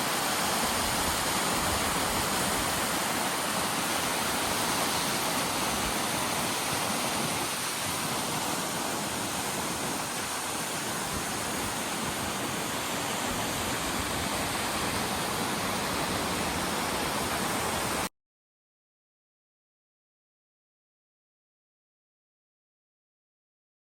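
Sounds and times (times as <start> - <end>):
waterfall roaring: 0.0 - 18.1.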